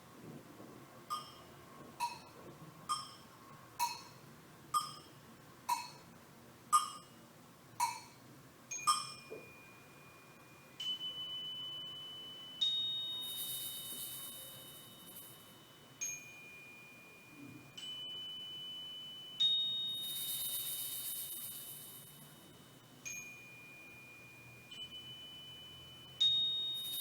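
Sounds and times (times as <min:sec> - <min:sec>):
struck metallic chime tones: 0:08.7 - 0:27.0
long ringing tones: 0:08.8 - 0:27.0.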